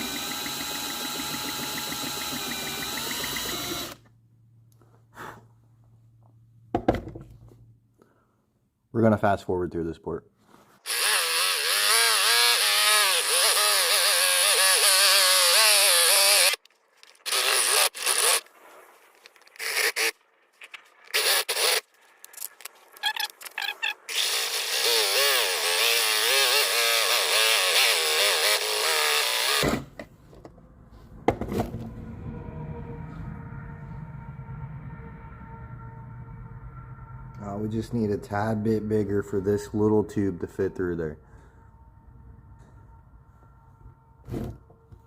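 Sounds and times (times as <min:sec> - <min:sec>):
power drill whining through glass: 0:00.0 - 0:04.1, 0:10.8 - 0:18.5, 0:19.4 - 0:20.2, 0:21.1 - 0:21.9, 0:23.0 - 0:29.9.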